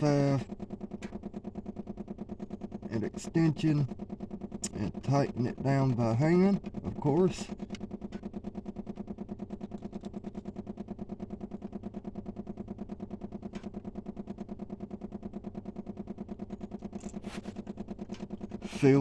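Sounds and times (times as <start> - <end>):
machine humming with pulses: 0.0 - 19.0.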